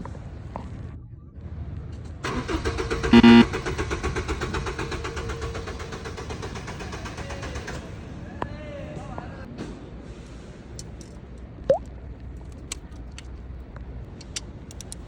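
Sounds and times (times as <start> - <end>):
car engine starting: 2.2 - 8.0
brief loud tone: 3.1 - 3.5.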